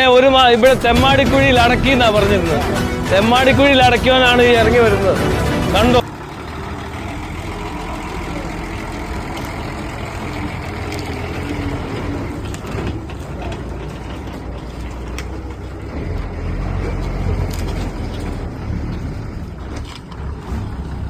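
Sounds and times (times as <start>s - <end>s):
bus engine rumbling: 0.0s - 21.0s.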